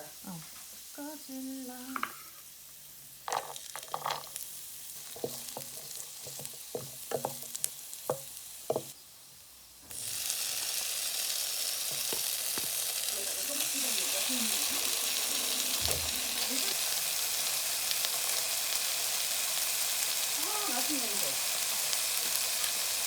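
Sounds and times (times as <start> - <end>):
food sizzling in hot oil: 0.0 - 23.0
utensils tapping on frying pan: 1.9 - 2.3, 3.3 - 4.4, 5.0 - 9.0, 11.8 - 12.9.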